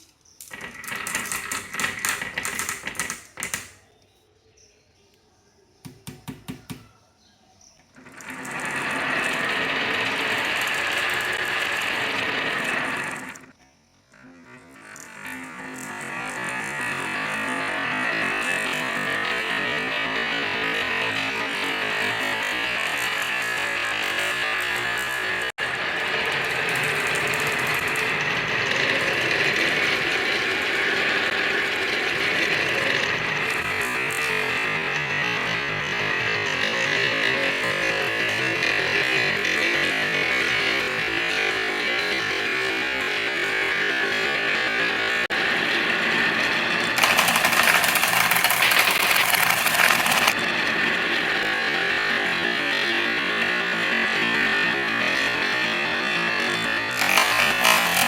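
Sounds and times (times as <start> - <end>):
sharp wooden clicks: 0.0 - 3.8, 47.0 - 50.4
wooden toys rolling down track: 0.0 - 3.9, 7.8 - 58.0.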